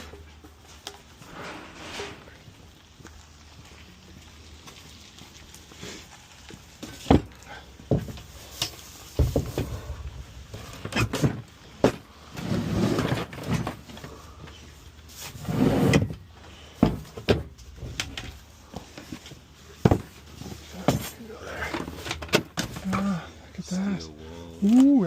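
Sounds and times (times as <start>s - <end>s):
rummaging scrapes: 1.2s - 2.4s, 8.4s - 14.2s
hard objects knocking and clunking: 6.8s - 8.3s, 9.1s - 12.1s, 16.8s - 19.2s, 19.8s - 23.0s.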